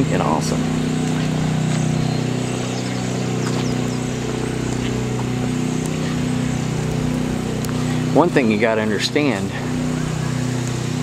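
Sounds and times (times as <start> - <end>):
motor humming: 0.0 - 11.0.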